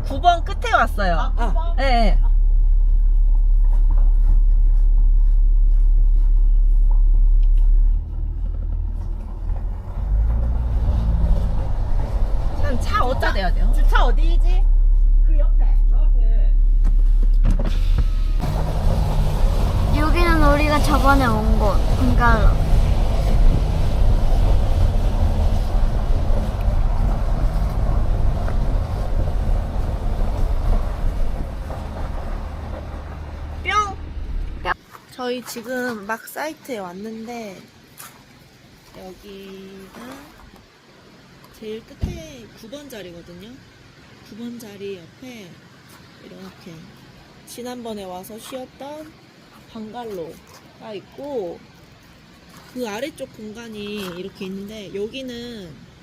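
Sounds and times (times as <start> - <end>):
car rumble inside cabin: 0.0 - 34.8
steady engine hum: 0.0 - 35.2, 36.2 - 56.0.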